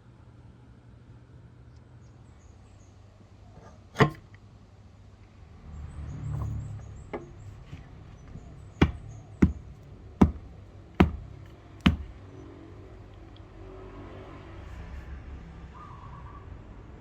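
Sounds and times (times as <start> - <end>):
knocks on wood: 8.8 - 12.1.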